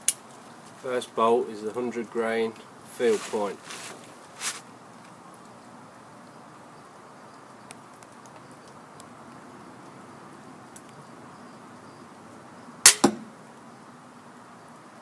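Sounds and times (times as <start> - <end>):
faint ticks of handling bow: 7.6 - 10.0, 10.7 - 11.0
bolt striking target: 12.9 - 13.3
crossbow string snapping: 12.9 - 13.3.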